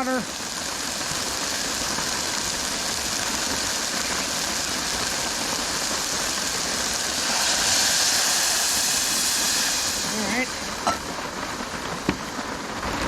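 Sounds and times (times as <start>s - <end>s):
rain on a tarp: 0.0s - 13.0s
gas stove burner rushing: 7.0s - 11.0s.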